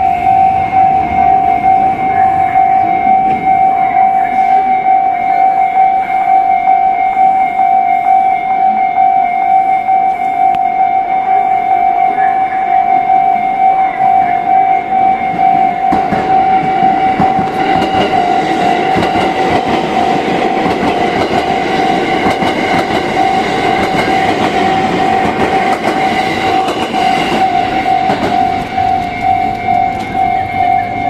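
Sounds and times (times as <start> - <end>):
train rumble and wheel clatter: 0.0 - 6.2, 13.1 - 31.0
level crossing bell ringing: 0.0 - 31.0.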